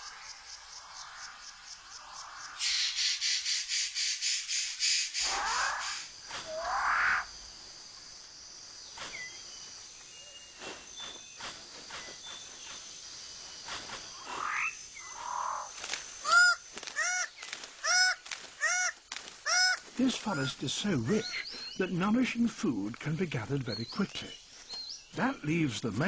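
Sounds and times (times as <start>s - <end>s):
high insect hum: 0.0s - 26.0s
harsh repeated bird calls: 2.2s - 7.4s, 14.1s - 22.3s.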